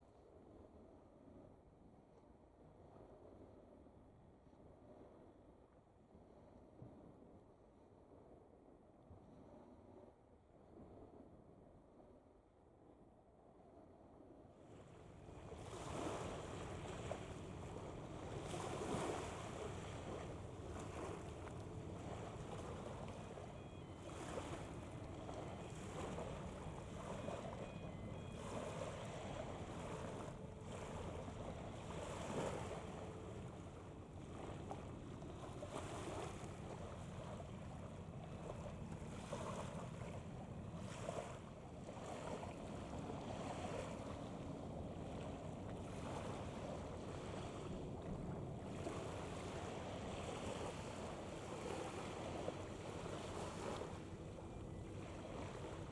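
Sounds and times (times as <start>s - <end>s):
waves washing: 14.8s - 55.9s.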